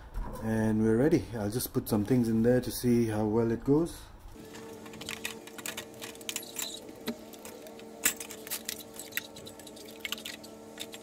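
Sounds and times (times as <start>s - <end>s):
hard objects clinking and clattering: 4.5s - 11.0s.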